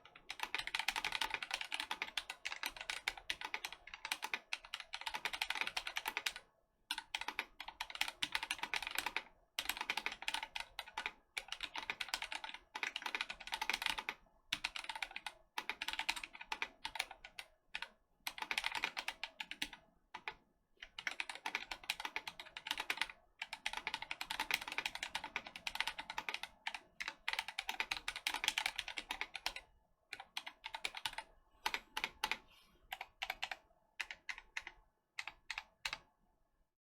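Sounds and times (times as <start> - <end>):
fast typing on mechanical keyboard: 0.0 - 36.1.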